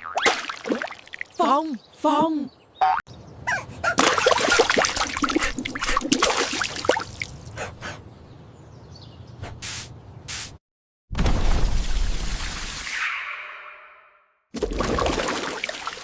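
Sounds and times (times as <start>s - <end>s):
cola fizzing and crackling: 4.0s - 7.4s.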